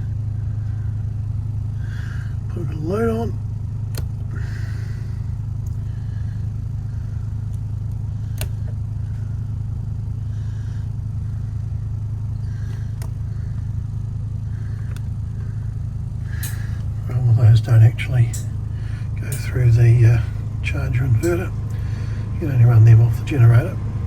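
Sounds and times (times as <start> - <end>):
generator humming: 0.0 - 24.0
sharp clicks: 3.8 - 4.3, 12.6 - 13.7, 14.8 - 15.5, 16.4 - 17.0.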